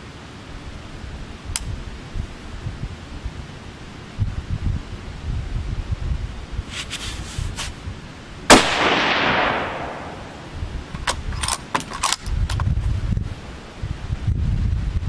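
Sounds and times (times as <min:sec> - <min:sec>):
wind rumble on microphone: 0:00.0 - 0:15.0
rifle shot with echo: 0:08.5 - 0:10.5.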